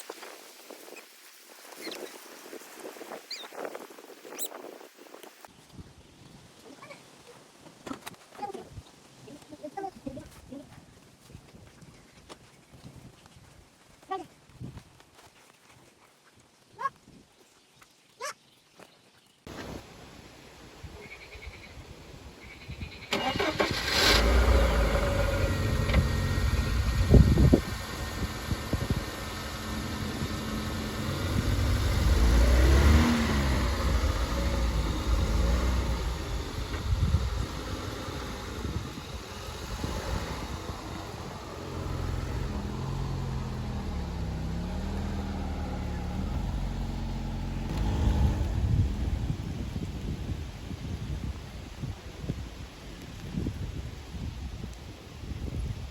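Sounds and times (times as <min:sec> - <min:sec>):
engine starting and rumbling: 0:22.9 - 0:49.8.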